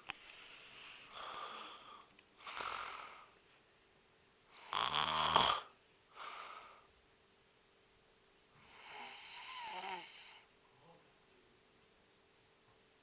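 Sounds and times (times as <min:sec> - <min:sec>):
soft breath: 0:00.0 - 0:03.7, 0:06.1 - 0:06.9
man snoring heavily: 0:02.4 - 0:03.2, 0:04.6 - 0:05.7, 0:08.7 - 0:10.4.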